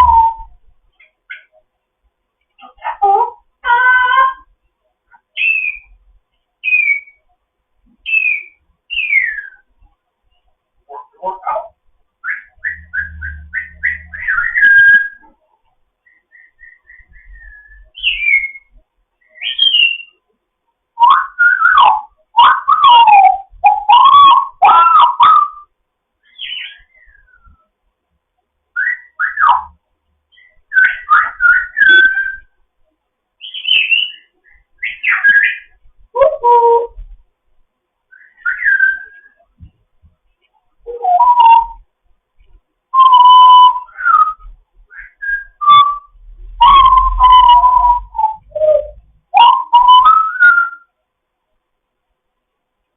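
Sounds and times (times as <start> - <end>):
parrot whistling and calling: 0.0 - 0.5, 5.4 - 6.0, 6.6 - 7.2, 8.0 - 9.7, 12.2 - 15.3, 16.0 - 20.2, 21.0 - 27.6, 28.8 - 32.5, 33.4 - 37.0, 38.1 - 39.4, 40.9 - 41.8, 43.0 - 50.9.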